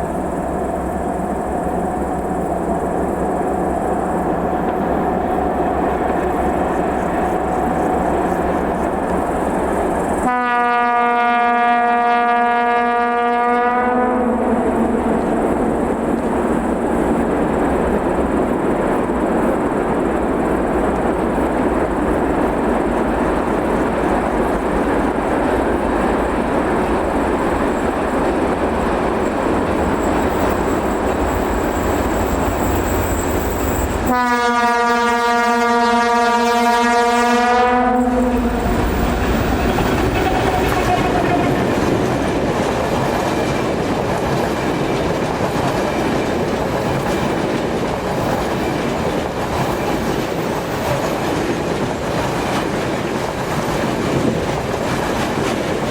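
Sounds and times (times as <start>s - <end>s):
freight train passing: 0.0s - 55.9s
locomotive horn blast: 10.2s - 15.3s, 34.0s - 38.9s, 39.7s - 41.7s.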